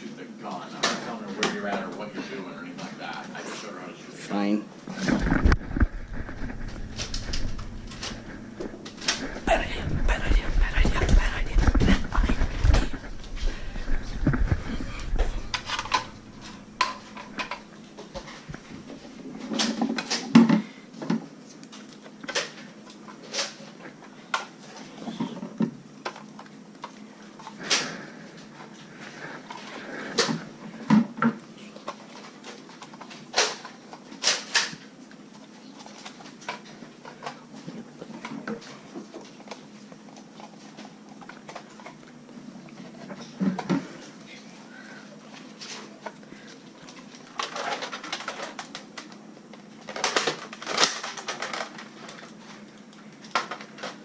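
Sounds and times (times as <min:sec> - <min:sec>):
people moving about: 0:04.8 - 0:19.5.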